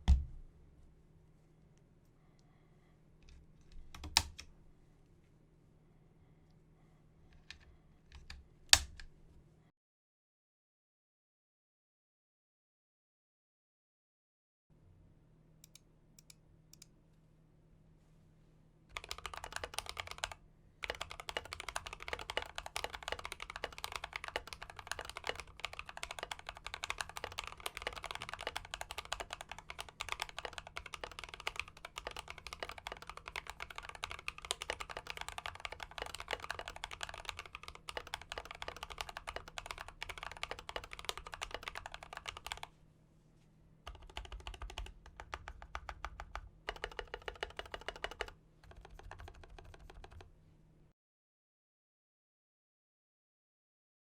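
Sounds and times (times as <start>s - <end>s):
typing on a mechanical keyboard: 3.7s - 4.5s, 18.9s - 42.7s, 43.9s - 50.3s.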